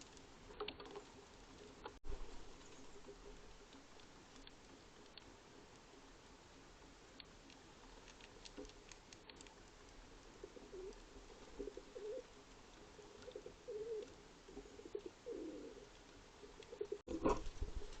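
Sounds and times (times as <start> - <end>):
faint ticks: 0.0 - 17.0
pigeon cooing: 10.4 - 11.0, 11.6 - 12.3, 13.1 - 15.9, 16.6 - 17.8.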